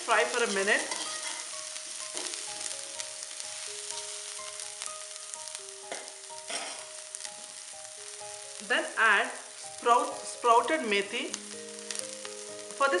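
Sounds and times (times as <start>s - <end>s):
vegetables sizzling in oil: 0.0s - 13.0s.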